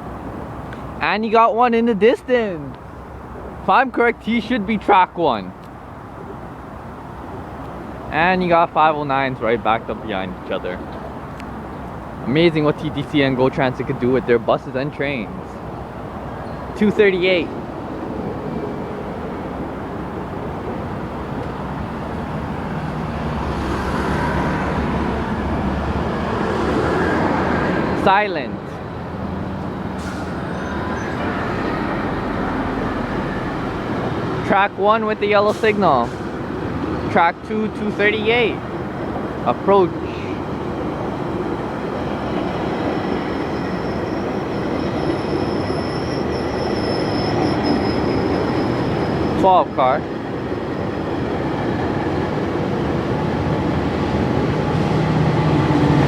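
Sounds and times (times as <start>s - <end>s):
heavy vehicle engine rumble: 2.3s - 45.7s
high thin squeal: 30.0s - 32.4s, 42.8s - 49.6s
train wheels rumbling on rails: 37.7s - 56.0s.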